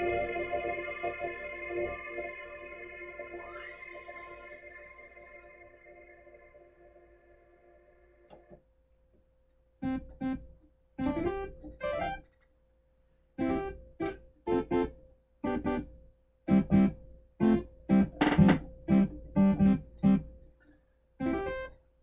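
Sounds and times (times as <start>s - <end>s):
synthesizer plucky notes: 11.0s - 12.2s, 16.5s - 20.3s, 21.2s - 21.7s.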